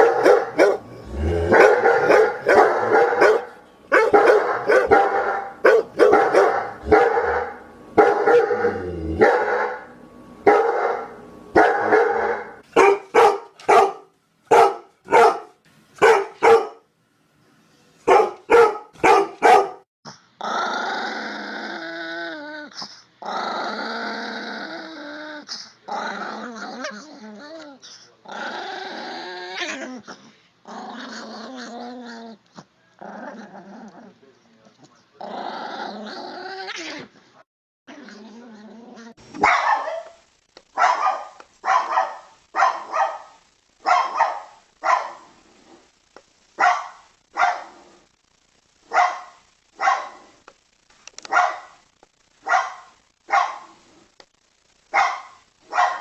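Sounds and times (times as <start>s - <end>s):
dogs barking: 0.0s - 0.9s, 1.5s - 9.9s, 10.5s - 16.8s, 18.1s - 19.8s, 39.4s - 40.2s, 40.8s - 45.3s, 46.6s - 47.8s, 48.9s - 50.2s, 51.3s - 51.8s, 52.4s - 53.7s, 54.9s - 56.0s
dog growling: 0.0s - 3.4s, 8.3s - 9.4s, 20.4s - 37.3s, 37.9s - 39.2s.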